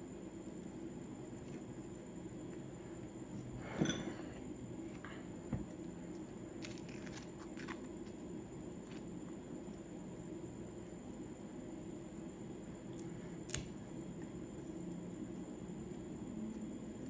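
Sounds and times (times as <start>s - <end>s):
steady low hum: 0.0s - 17.0s
onion skins crackling: 6.6s - 8.1s, 13.0s - 13.7s.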